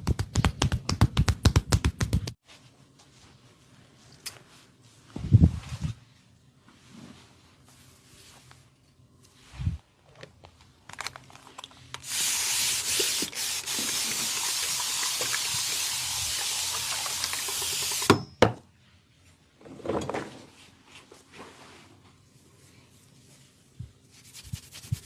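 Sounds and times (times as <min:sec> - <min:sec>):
hissing spray: 0:12.0 - 0:18.1.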